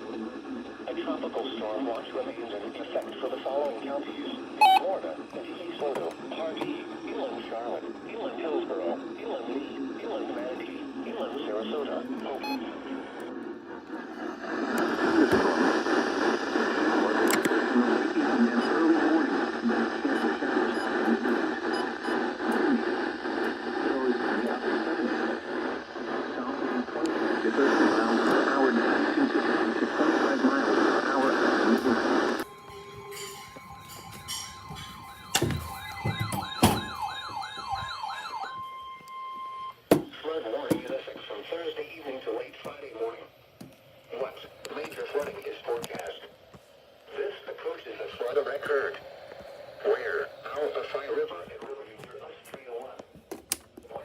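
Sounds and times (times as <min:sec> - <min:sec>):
radio static hiss: 0:00.0 - 0:38.5, 0:39.8 - 0:54.0
steady alert tone: 0:32.4 - 0:38.5
siren wail sweeping: 0:32.4 - 0:39.6.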